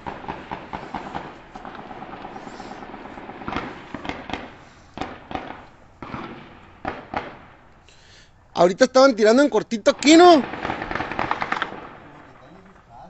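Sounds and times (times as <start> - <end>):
rapid gunfire: 0.0 - 7.5, 9.9 - 12.7
single sharp gunshots: 0.0 - 7.6, 10.0 - 12.6.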